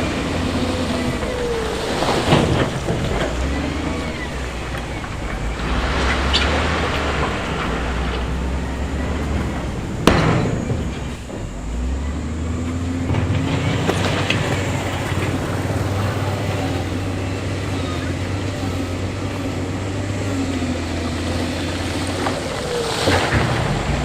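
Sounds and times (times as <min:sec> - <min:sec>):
diesel construction machinery droning: 0:00.0 - 0:24.0
sharp metallic bang: 0:10.0 - 0:11.8.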